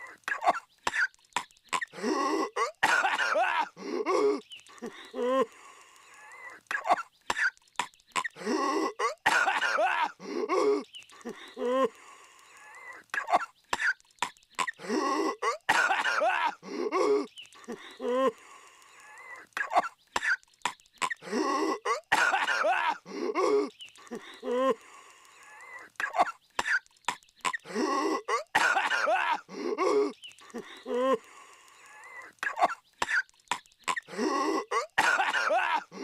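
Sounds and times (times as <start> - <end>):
cartoon character coughing: 0.3 - 1.1, 1.8 - 4.4, 8.2 - 10.8, 13.2 - 14.0, 14.6 - 17.3, 19.6 - 20.4, 21.0 - 23.7, 26.0 - 26.8, 27.5 - 30.2, 33.9 - 36.0.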